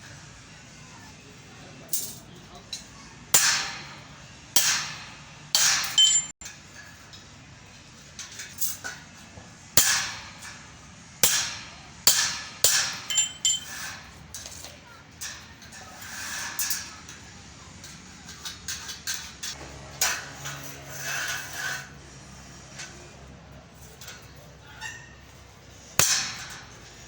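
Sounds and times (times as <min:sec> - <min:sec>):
hammer striking metal: 0:03.4 - 0:04.0, 0:04.6 - 0:06.4, 0:09.8 - 0:10.4, 0:11.2 - 0:14.0, 0:26.0 - 0:26.7.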